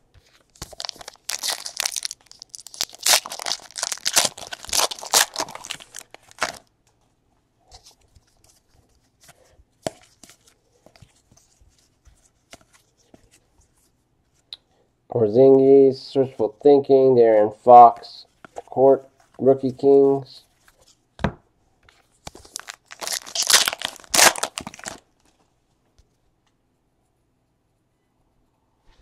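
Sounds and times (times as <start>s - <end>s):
card pack wrapper tearing: 0.5s - 6.6s, 22.3s - 25.0s.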